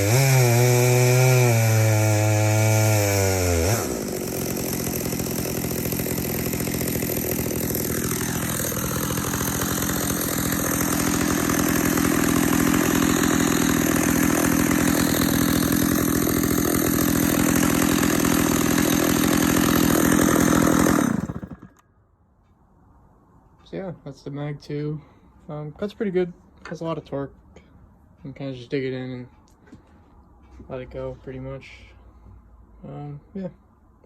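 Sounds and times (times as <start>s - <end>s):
chainsaw cutting log: 0.0s - 21.8s.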